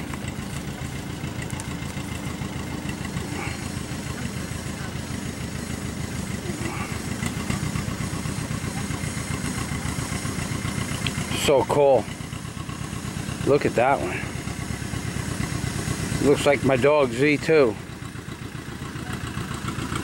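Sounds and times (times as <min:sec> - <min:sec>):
small engine idling: 0:00.0 - 0:20.0.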